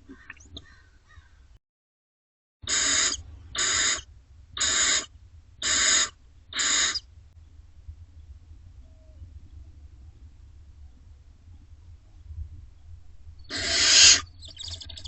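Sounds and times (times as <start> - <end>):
owlets hissing screeches: 2.7 - 4.0, 4.6 - 7.0, 13.5 - 14.3.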